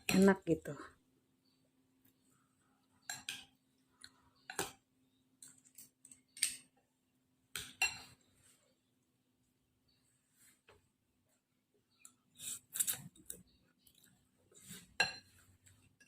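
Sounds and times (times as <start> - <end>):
cutlery clinking against bowl: 3.0 - 3.6, 7.6 - 8.2, 15.0 - 15.4.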